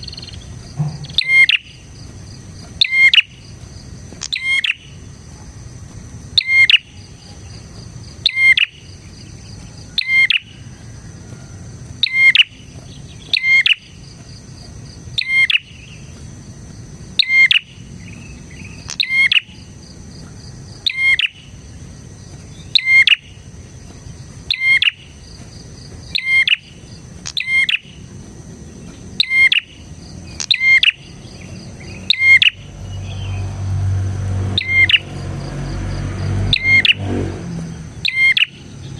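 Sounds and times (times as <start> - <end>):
bird chirping: 0.0 - 38.9.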